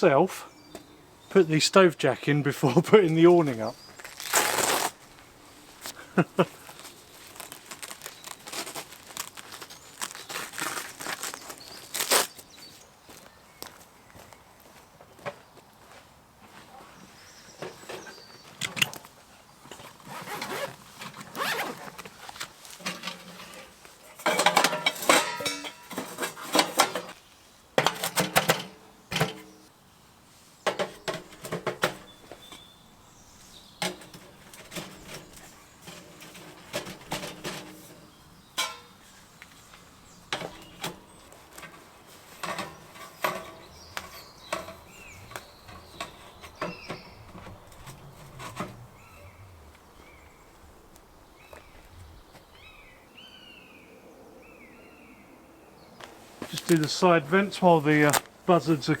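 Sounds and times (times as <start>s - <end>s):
camping gear rustling and clattering: 2.5s - 53.6s, 55.8s - 59.0s.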